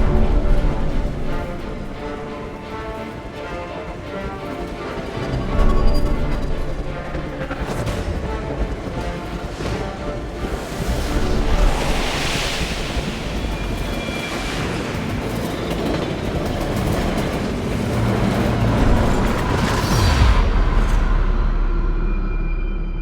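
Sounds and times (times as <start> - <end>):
steam train rumbling and clattering: 0.0 - 22.7
film music: 0.0 - 23.0.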